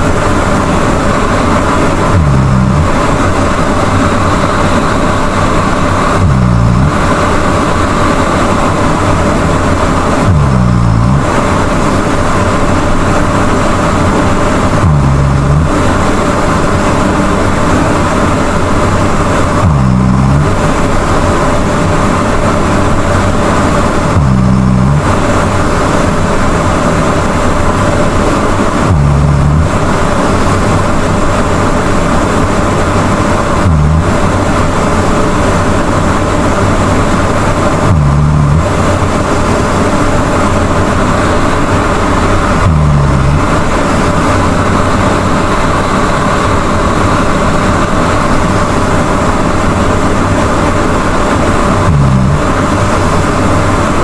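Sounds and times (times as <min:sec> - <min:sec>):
person snoring loudly: 0:02.0 - 0:03.0, 0:06.1 - 0:07.2, 0:10.2 - 0:11.4, 0:14.8 - 0:15.8, 0:19.6 - 0:20.6, 0:24.0 - 0:25.2, 0:28.8 - 0:29.9, 0:33.6 - 0:34.3, 0:37.8 - 0:38.8, 0:42.3 - 0:43.8, 0:51.8 - 0:52.6.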